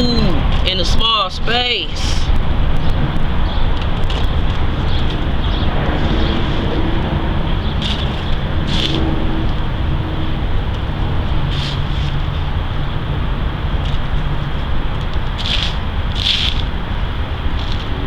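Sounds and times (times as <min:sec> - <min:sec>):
faint hum: 0:00.0 - 0:18.0
low outdoor rumble: 0:00.0 - 0:18.0
scratchy rustles: 0:03.9 - 0:18.0.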